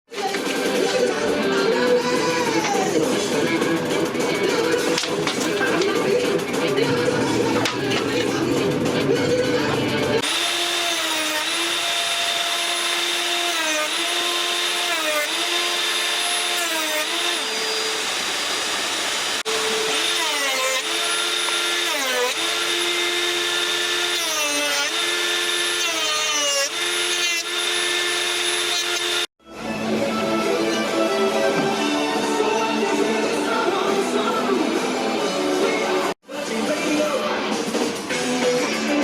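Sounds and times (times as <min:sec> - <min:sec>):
electric wood router whine: 0:10.2 - 0:29.3.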